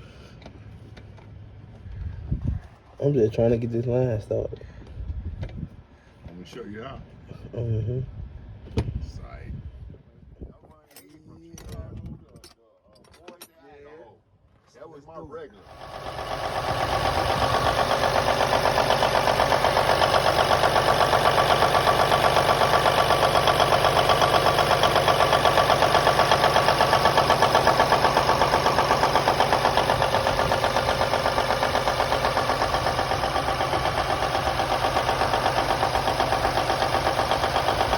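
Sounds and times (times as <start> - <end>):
diesel truck engine idling: 15.7 - 37.9.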